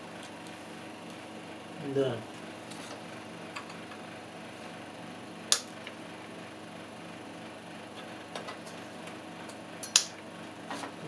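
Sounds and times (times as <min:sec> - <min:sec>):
sharp click: 0:09.8 - 0:10.2.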